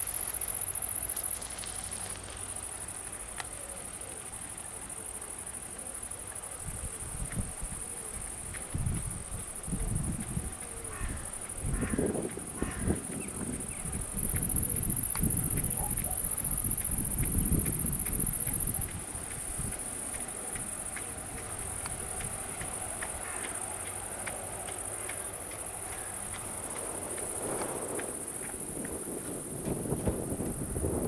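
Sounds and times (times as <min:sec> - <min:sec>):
crickets chirring: 0:00.0 - 0:31.0
low gusty rumbling: 0:26.2 - 0:31.0.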